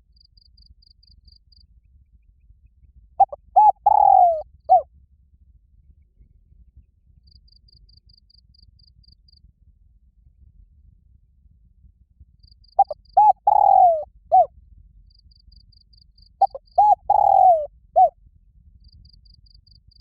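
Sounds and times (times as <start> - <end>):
faint insect trill: 0.0 - 1.7, 7.2 - 9.4, 12.4 - 18.1, 18.8 - 20.0
dove cooing: 3.2 - 4.8, 12.8 - 14.5, 16.4 - 18.1.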